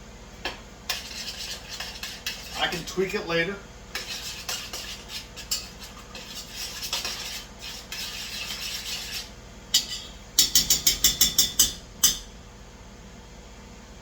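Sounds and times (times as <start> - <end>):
spoon scraping pan: 0.9 - 12.2
spoon clinking on pan: 9.7 - 12.3.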